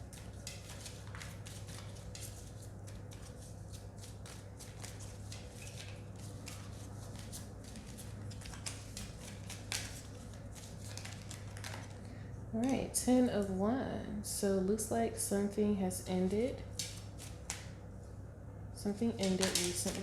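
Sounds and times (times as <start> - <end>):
cards being shuffled: 0.0 - 12.1, 19.2 - 20.0
steady low hum: 0.0 - 20.0.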